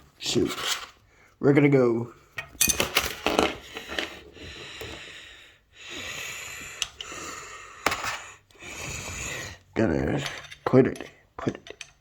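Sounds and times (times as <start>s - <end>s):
close breathing: 3.6s - 10.6s.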